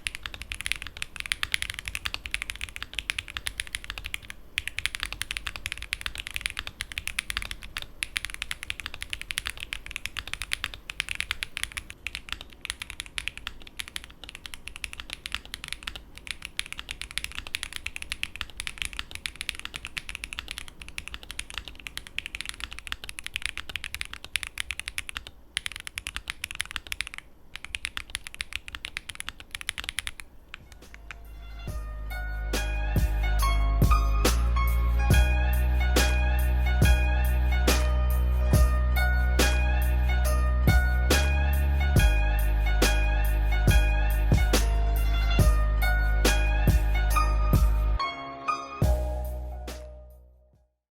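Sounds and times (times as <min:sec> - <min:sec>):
mechanical keyboard typing: 0:00.0 - 0:31.2.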